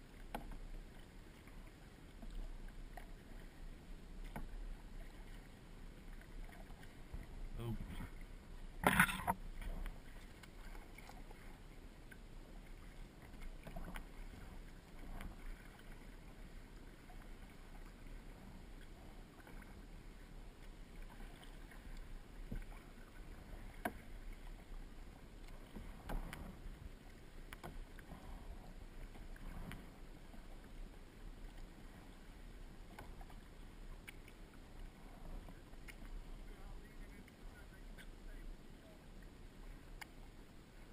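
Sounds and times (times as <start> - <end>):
kayak paddle splashing: 0.0 - 40.9.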